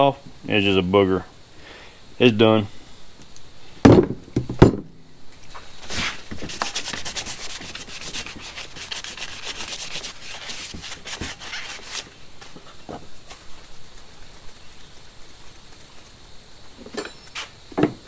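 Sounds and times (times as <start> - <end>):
hand scrubbing on metal: 5.9 - 12.1.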